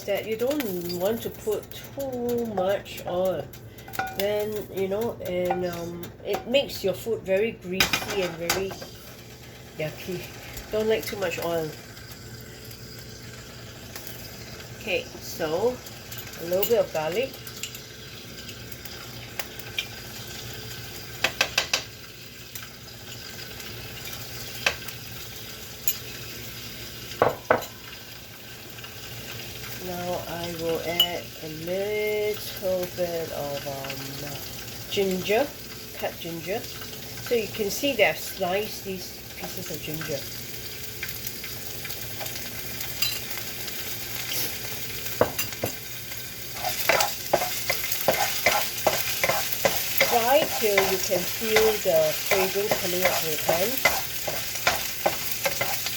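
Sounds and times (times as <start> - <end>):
garlic sizzling in oil: 0.0 - 55.9
spatula scraping a pan: 46.4 - 55.9.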